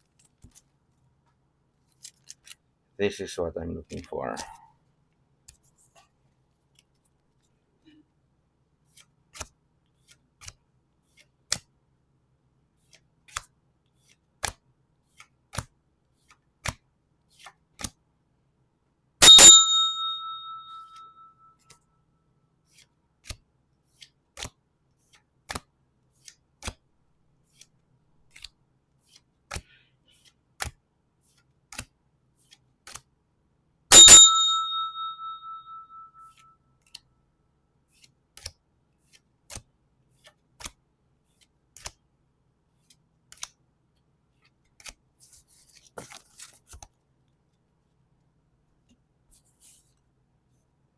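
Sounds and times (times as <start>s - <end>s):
bell-like ding: 19.2s - 21.2s, 33.9s - 36.2s.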